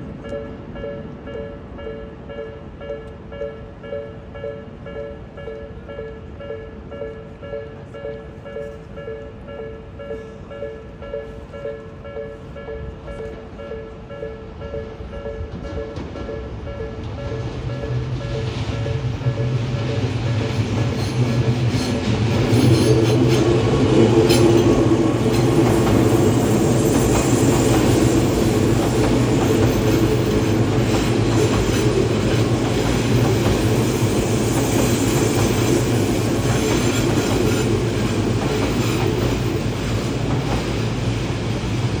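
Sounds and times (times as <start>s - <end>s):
electric train rumble: 0.0s - 42.0s
wheels clacking over rail joints: 15.2s - 41.0s.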